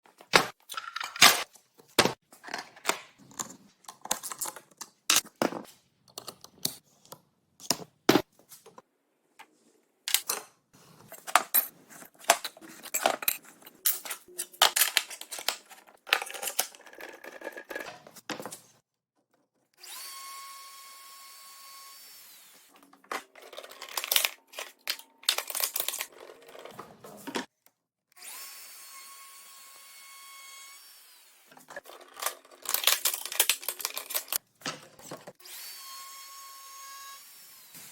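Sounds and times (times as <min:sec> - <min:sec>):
tool handling clicks and knocks: 0:10.1 - 0:18.7, 0:31.6 - 0:35.4.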